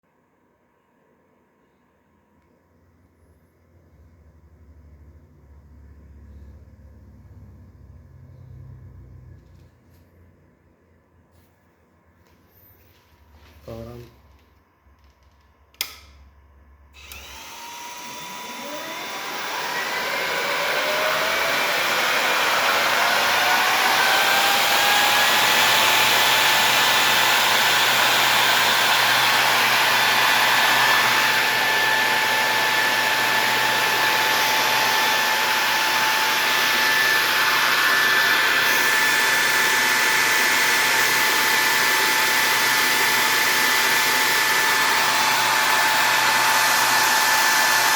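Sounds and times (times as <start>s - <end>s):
switch click: 15.8s - 16.2s.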